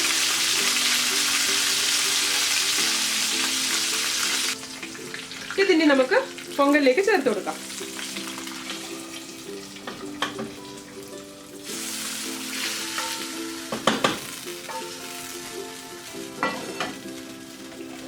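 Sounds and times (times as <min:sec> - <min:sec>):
hot ghee sizzling: 0:00.0 - 0:18.0
pan and spoon knocks: 0:13.7 - 0:14.9.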